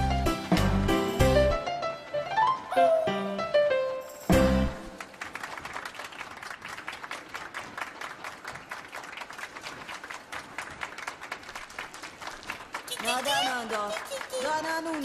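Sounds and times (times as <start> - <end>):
applause: 4.8 - 15.0.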